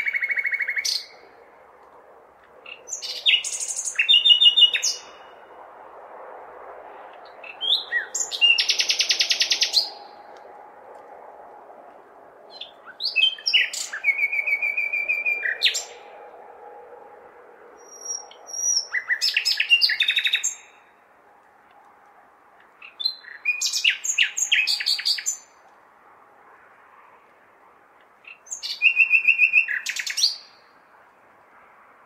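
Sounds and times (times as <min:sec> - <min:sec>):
nightingale singing: 0:00.0 - 0:01.4, 0:02.6 - 0:05.4, 0:07.2 - 0:10.2, 0:12.5 - 0:16.1, 0:17.8 - 0:20.9, 0:22.8 - 0:25.6, 0:28.2 - 0:30.6
distant city hum: 0:00.0 - 0:32.0.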